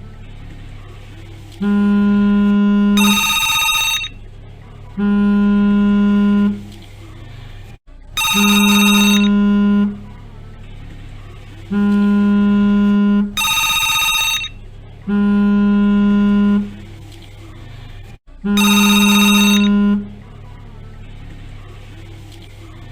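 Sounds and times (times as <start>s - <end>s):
steady low hum: 0.0s - 18.6s
phone vibrating buzzes: 1.6s - 4.2s, 5.0s - 6.7s, 8.2s - 10.0s, 11.7s - 16.8s, 18.5s - 20.2s
electronic telephone ring: 3.0s - 4.2s, 8.2s - 9.6s, 13.4s - 14.6s, 18.6s - 20.1s.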